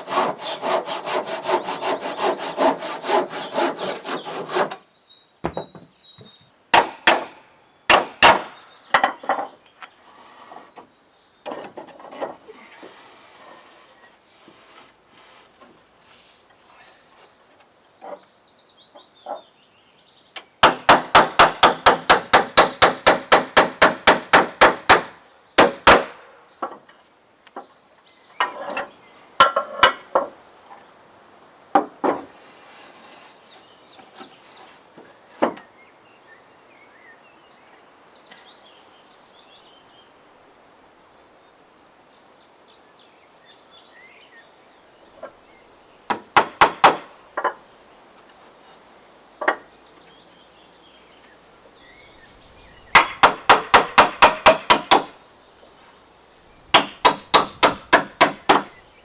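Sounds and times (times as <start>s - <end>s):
hammer striking wood: 5.4s - 9.2s, 20.6s - 26.2s, 46.1s - 47.6s, 52.9s - 55.2s, 56.7s - 58.8s.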